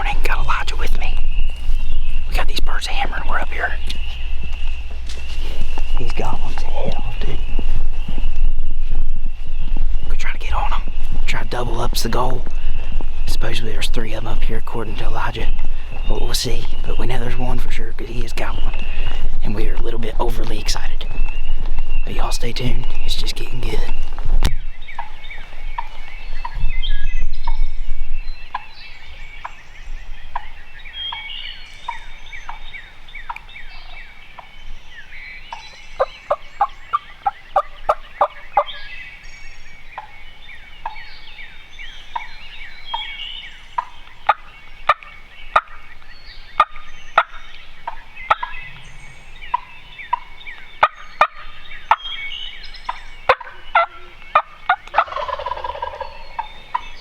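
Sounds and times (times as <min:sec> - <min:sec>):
turkeys gobbling: 0:00.0 - 0:08.2, 0:24.8 - 0:26.6, 0:28.5 - 0:29.5, 0:30.3 - 0:57.0
low rumble: 0:00.0 - 0:35.2
songbirds chirping: 0:00.0 - 0:57.0.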